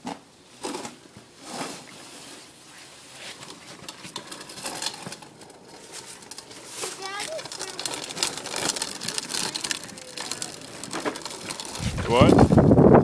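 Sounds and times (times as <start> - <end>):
ice crunching and crackling: 2.9 - 12.7.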